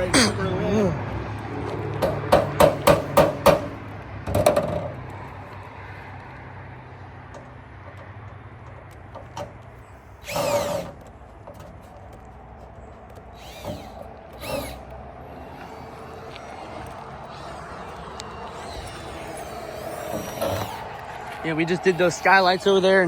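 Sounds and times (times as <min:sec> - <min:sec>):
short rising whine: 0:13.4 - 0:23.0.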